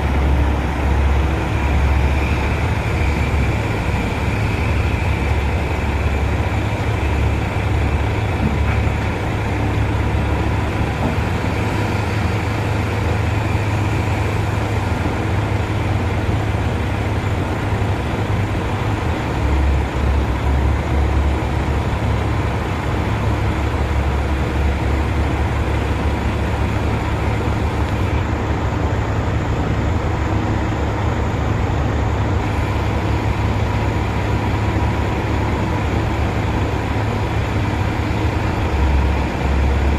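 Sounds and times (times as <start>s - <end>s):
diesel engine rumbling: 0.0s - 39.9s.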